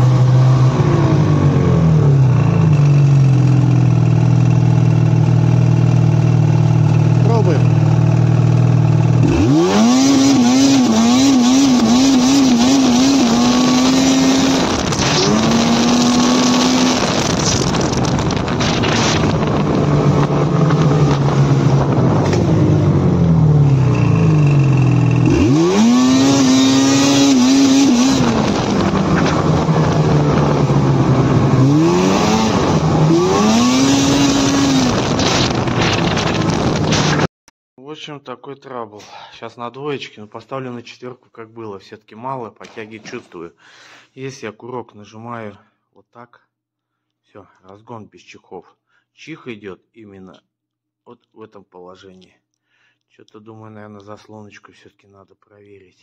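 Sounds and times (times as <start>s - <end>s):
snowmobile engine revving: 0.0s - 37.3s.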